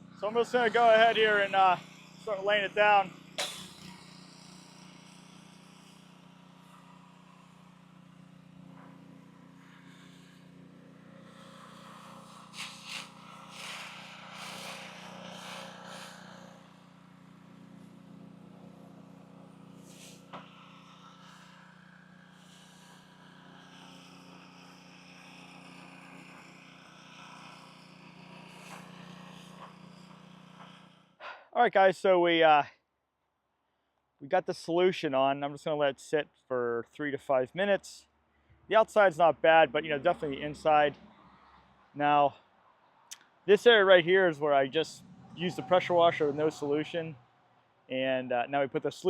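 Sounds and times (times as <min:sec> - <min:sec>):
pressure washer engine running: 0:00.0 - 0:31.0, 0:43.6 - 0:47.1.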